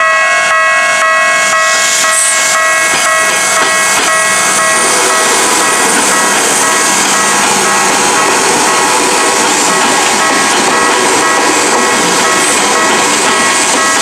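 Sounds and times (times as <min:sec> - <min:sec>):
level crossing electronic bell: 0:00.0 - 0:05.3
train passing: 0:00.0 - 0:14.0.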